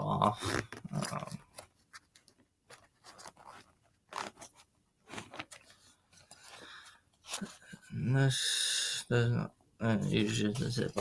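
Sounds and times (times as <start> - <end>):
zipper pulls: 0.4 - 1.3, 3.2 - 4.4
fabric bag being handled: 2.7 - 6.1.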